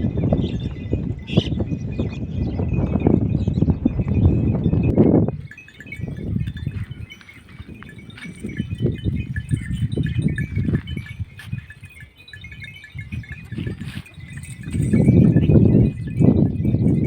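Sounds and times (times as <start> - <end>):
sheep neck bells tinkling: 0.0 - 17.0
hooves shuffling and thudding: 5.3 - 17.0.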